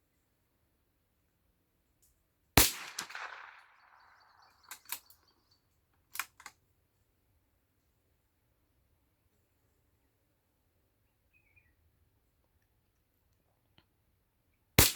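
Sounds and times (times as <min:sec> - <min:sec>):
rifle shot with echo: 0:02.6 - 0:05.0.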